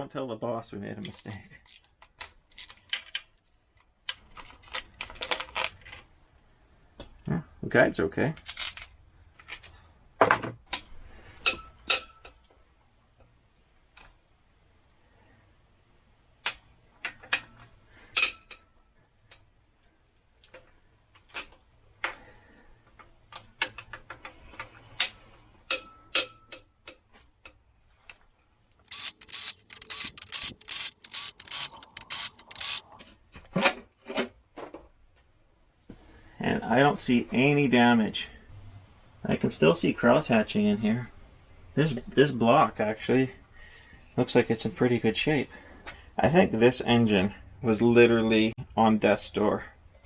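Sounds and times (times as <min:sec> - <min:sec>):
metal tools clinking: 0:28.9 - 0:33.1.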